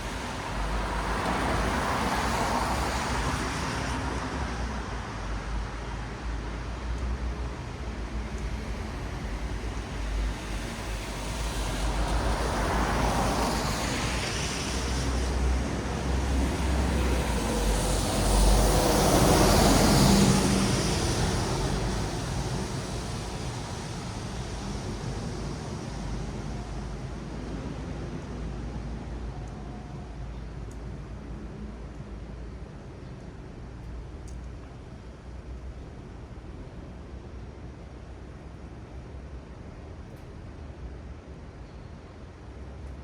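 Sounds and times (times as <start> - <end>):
tyres hissing on wet road: 0.0 - 34.2
low traffic rumble: 0.0 - 43.0.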